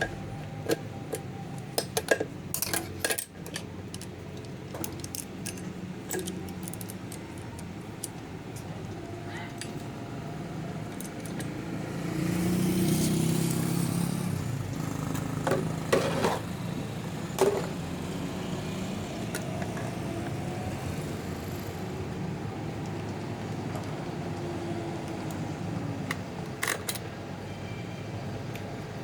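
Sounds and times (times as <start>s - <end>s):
sharp clicks and clinks: 0.0s - 9.8s
passing vehicle engine hum: 5.6s - 26.4s.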